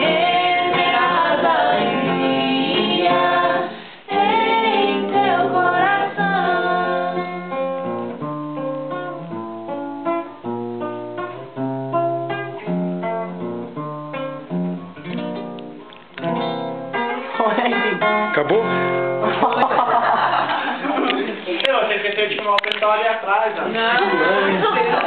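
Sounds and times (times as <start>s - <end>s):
woman singing: 0.0s - 7.3s
acoustic guitar plucking: 0.0s - 19.8s.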